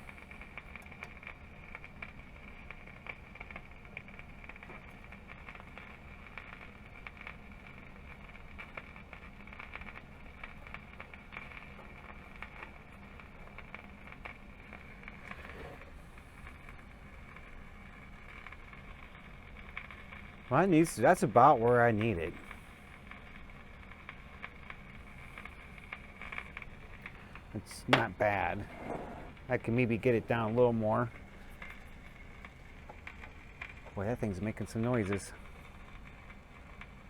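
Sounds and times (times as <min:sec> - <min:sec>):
radio crackling and popping: 0:00.0 - 0:37.0
radio speaker low hum: 0:20.5 - 0:22.7, 0:24.9 - 0:35.8.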